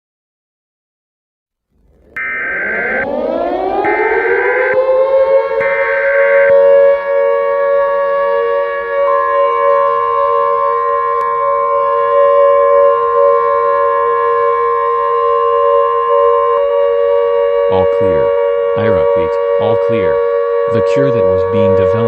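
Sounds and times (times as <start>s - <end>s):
civil defense siren: 1.9s - 22.0s
data header tones: 2.1s - 7.6s, 17.7s - 22.0s.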